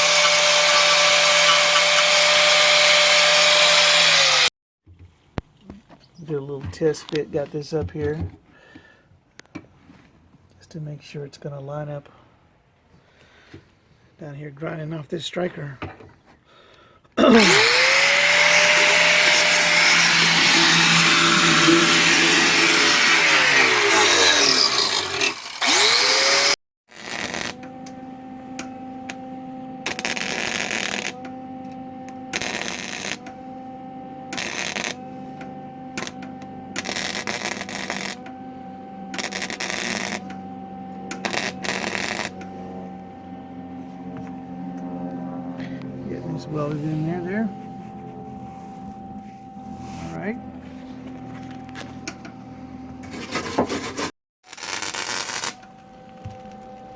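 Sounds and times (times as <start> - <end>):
angle grinder grinding metal: 0.0 - 4.5, 17.2 - 56.9
welder humming: 0.0 - 4.5, 17.2 - 56.9
welding arc crackle: 17.5 - 27.6, 29.8 - 31.2, 32.3 - 33.2, 34.4 - 35.0, 36.0 - 36.2, 36.8 - 38.2, 39.2 - 40.3, 41.1 - 42.3, 54.4 - 56.6.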